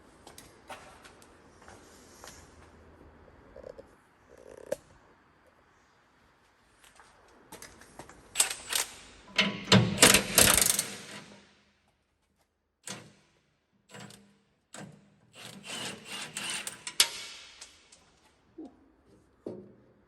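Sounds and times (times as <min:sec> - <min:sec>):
hand tools and metal clattering: 0:14.8 - 0:18.3.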